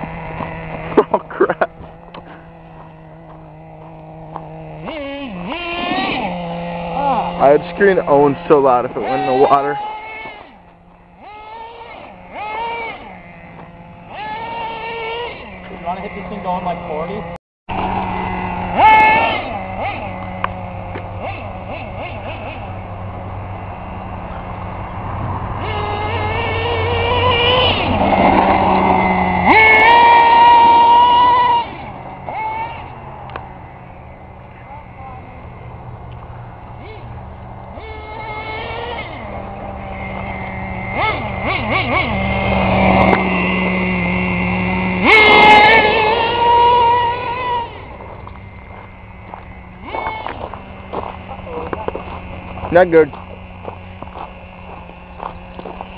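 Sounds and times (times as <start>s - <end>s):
nitro engine revving: 0.0s - 55.9s.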